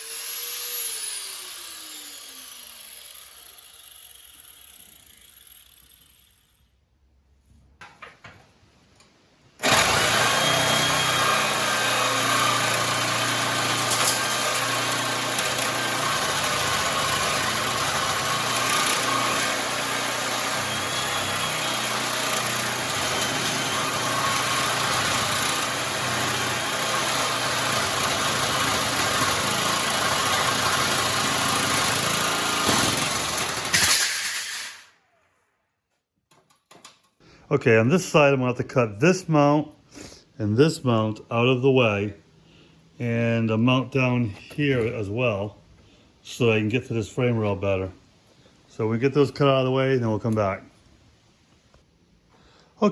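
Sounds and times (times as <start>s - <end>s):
angle grinder cutting steel: 0.0s - 6.7s, 9.6s - 35.2s.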